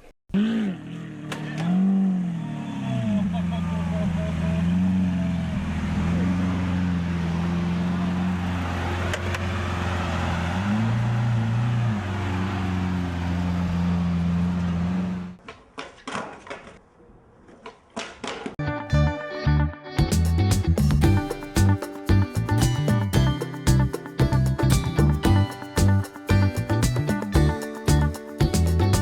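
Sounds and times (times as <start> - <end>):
engine droning: 0.4 - 15.4.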